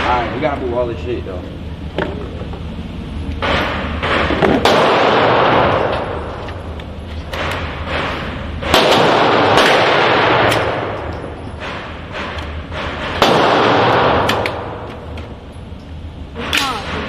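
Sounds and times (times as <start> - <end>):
gunshots with echoing tail: 3.4 - 6.3, 7.4 - 15.1.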